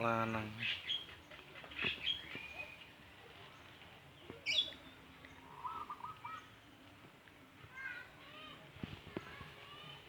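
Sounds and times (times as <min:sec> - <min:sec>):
birds chirping: 0:00.0 - 0:06.9.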